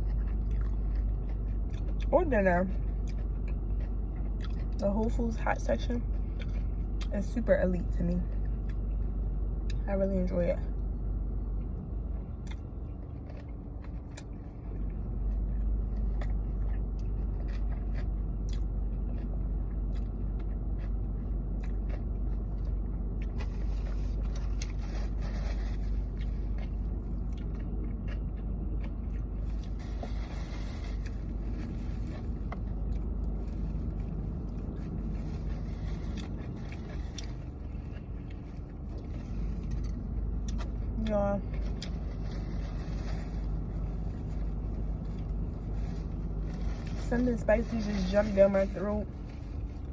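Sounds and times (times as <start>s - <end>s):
person chewing food: 0.0s - 5.2s, 6.0s - 7.1s, 11.5s - 47.1s
steady low rumble: 0.0s - 49.9s.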